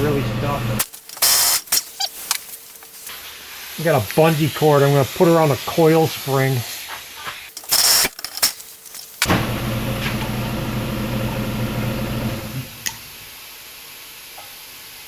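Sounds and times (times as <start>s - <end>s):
motor running at steady pitch: 0.0s - 0.8s
short loud hiss: 0.8s - 4.3s, 6.8s - 9.4s.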